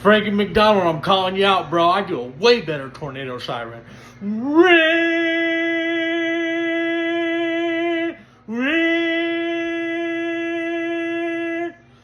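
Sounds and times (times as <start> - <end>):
man imitating a siren: 4.2 - 11.9.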